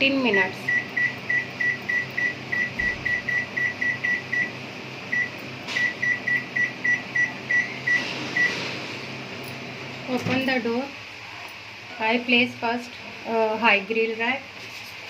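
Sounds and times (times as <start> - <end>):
microwave beeping: 0.4 - 10.6.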